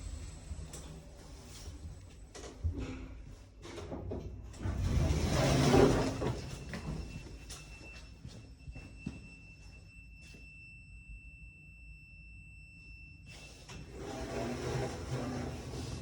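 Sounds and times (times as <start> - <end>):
lift car low hum: 0.0 - 3.7
lift doors sliding: 4.5 - 7.2, 13.4 - 16.0
faint steady high tone: 6.4 - 13.8.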